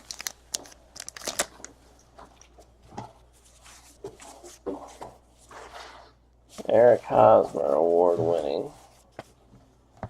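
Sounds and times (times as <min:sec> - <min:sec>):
cards clicking and rustling: 0:00.0 - 0:02.6.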